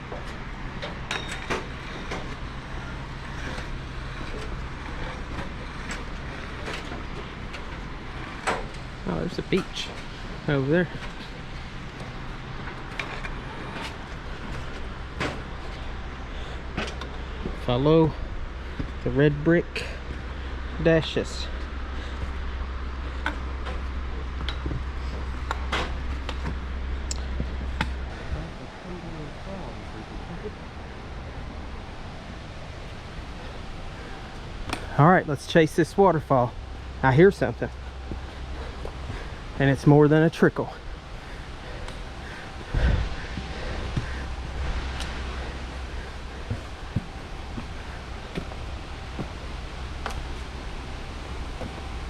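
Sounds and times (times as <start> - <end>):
steady low rumble: 0.0 - 52.0
low rumble: 36.0 - 52.0
footsteps on rocky trail: 37.6 - 39.6, 40.9 - 52.0.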